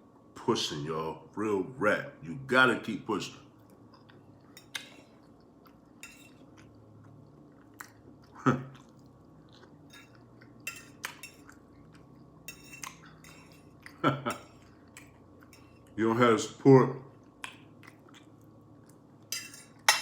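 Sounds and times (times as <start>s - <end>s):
chewing: 3.6s - 16.0s, 17.1s - 19.9s
cutlery clicking against dish: 19.3s - 20.0s.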